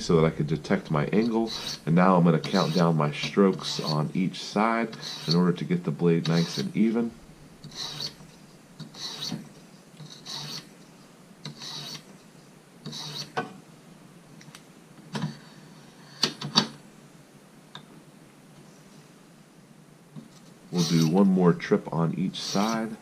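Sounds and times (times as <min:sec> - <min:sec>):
knife grinding on stone: 0:01.2 - 0:03.0, 0:04.9 - 0:05.4, 0:07.6 - 0:10.7, 0:11.5 - 0:12.1, 0:12.9 - 0:13.4.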